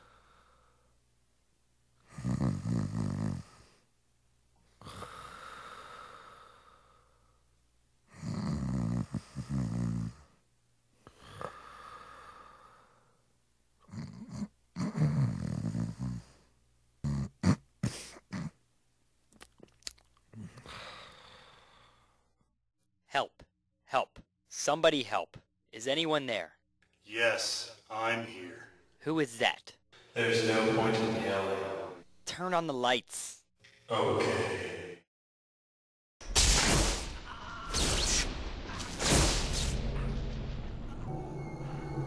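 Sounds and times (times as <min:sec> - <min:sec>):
breathy exhale: 0:00.0 - 0:00.9, 0:04.8 - 0:07.4, 0:11.0 - 0:13.2, 0:20.4 - 0:22.3, 0:37.2 - 0:37.8
person snoring: 0:02.0 - 0:03.8, 0:04.8 - 0:07.2, 0:08.1 - 0:10.4, 0:11.1 - 0:13.1, 0:13.8 - 0:18.6.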